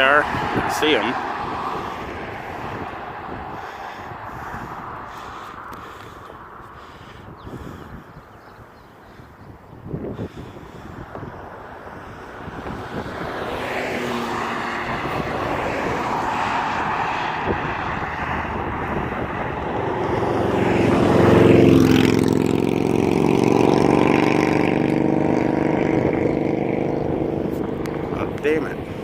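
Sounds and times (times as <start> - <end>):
jets flying past: 11.4 - 29.0.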